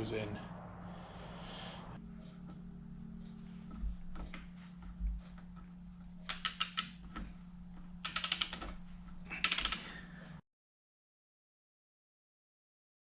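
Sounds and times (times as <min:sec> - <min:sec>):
steady low hum: 0:00.0 - 0:10.4
ratchet wrench clicking: 0:06.3 - 0:07.0, 0:08.0 - 0:08.7, 0:09.4 - 0:10.0.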